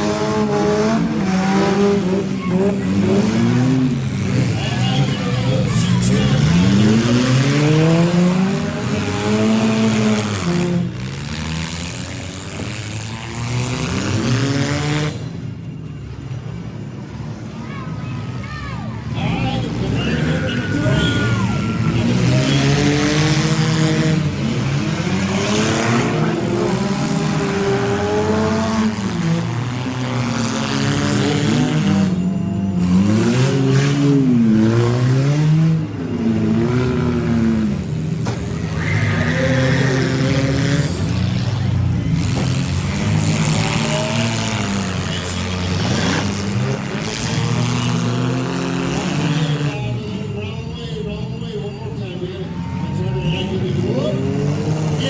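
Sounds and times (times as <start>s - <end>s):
car engines revving: 0.0s - 55.0s.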